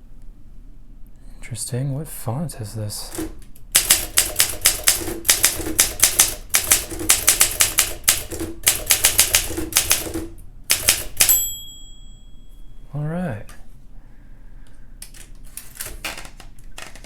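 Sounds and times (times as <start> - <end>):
manual typewriter typing: 3.1 - 11.6, 15.0 - 17.0
typewriter bell ring: 10.7 - 12.8.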